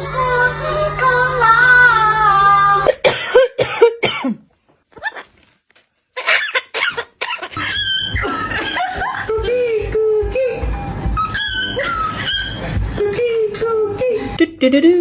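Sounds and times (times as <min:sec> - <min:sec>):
person coughing harshly: 0:02.9 - 0:04.5.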